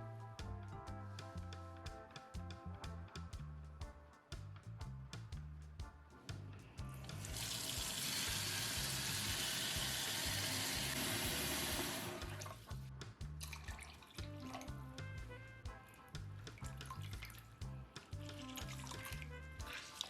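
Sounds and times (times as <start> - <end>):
background music with bass line: 0.0 - 20.0
tap water running into sink: 7.2 - 12.4.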